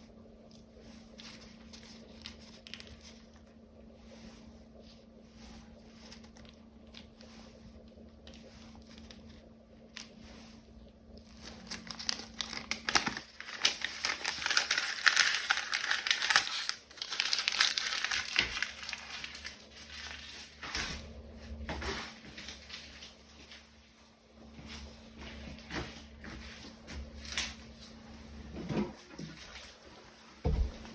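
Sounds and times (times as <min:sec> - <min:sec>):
plastic crackling and snapping: 0:01.7 - 0:03.5, 0:11.2 - 0:20.4.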